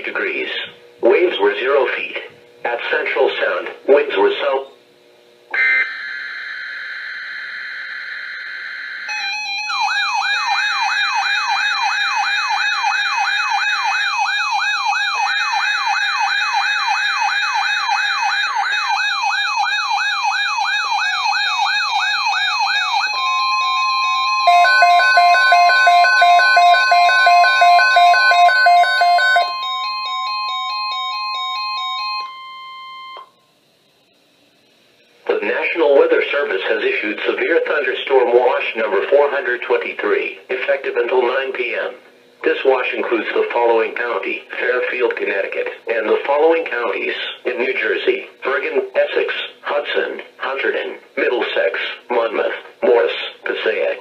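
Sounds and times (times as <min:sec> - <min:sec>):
steady single-pitch alert tone: 0:05.5 - 0:16.5, 0:21.4 - 0:33.4
warbling siren-like alert tone: 0:05.5 - 0:33.3
rapid beeping alarm: 0:05.5 - 0:33.4.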